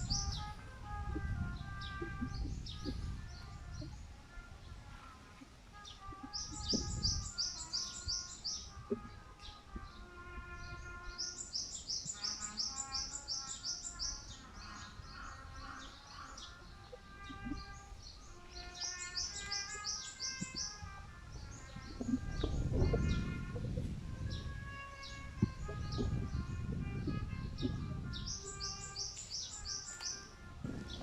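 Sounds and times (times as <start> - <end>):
rapid high-pitched bird chirps: 0.0 - 0.5, 1.2 - 4.1, 5.8 - 10.0, 10.7 - 23.4, 27.6 - 30.3
lower birds calling: 0.0 - 31.0.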